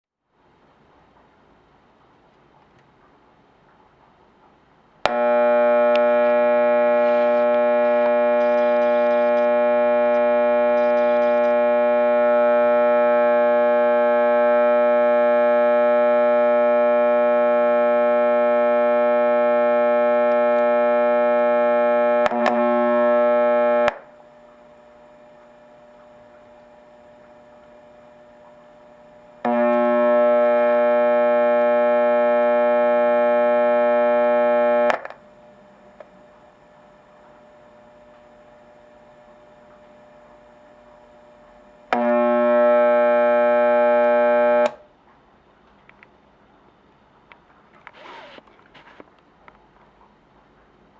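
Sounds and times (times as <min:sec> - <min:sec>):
loud buzzy mains hum: 0:05.0 - 0:44.9.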